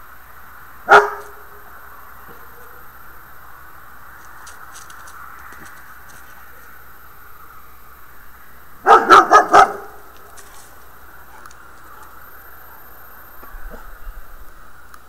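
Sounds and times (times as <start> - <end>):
background hiss: 0.0 - 15.0
dog barking: 0.9 - 1.4, 8.8 - 10.1, 11.3 - 13.0.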